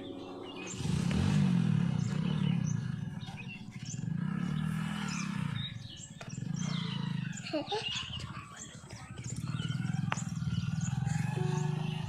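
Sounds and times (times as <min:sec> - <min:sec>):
faint birds chirping: 0:00.0 - 0:12.0.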